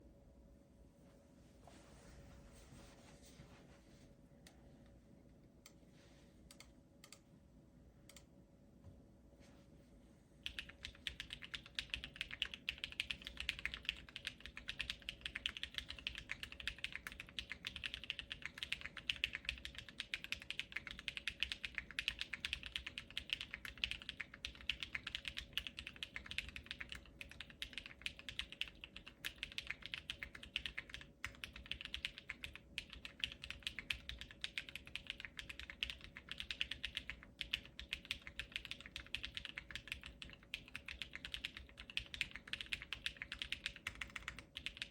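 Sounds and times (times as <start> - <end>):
mechanical keyboard typing: 10.4 - 44.9.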